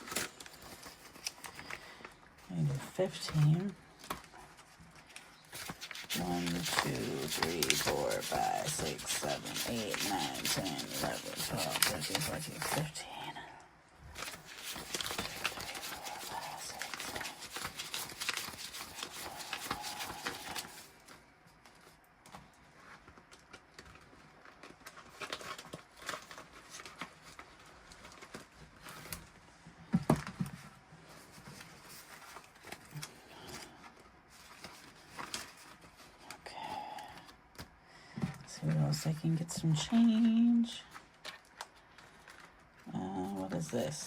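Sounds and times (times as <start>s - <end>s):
paper crinkles and clicks: 0.0s - 2.1s, 3.1s - 12.9s, 14.2s - 29.4s, 31.2s - 36.2s, 40.9s - 44.0s
banknotes rustling: 0.0s - 2.2s, 2.8s - 13.2s, 14.2s - 21.2s, 31.2s - 36.2s.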